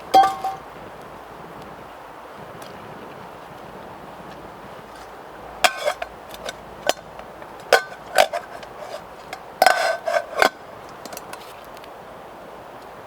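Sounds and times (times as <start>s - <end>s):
metal pot and lid clinking: 0.0s - 0.6s, 5.6s - 11.3s.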